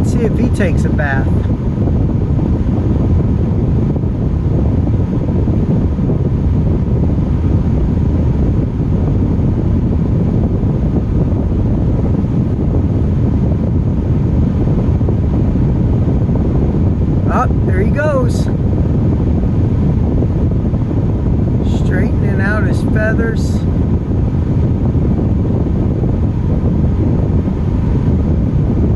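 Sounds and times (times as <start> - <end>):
wind buffeting microphone: 0.0 - 28.9.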